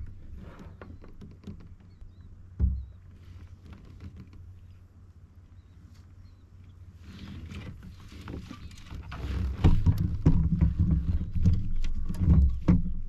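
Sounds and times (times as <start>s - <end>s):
knocks and thumps against kayak hull: 0.0s - 4.5s, 7.5s - 13.0s.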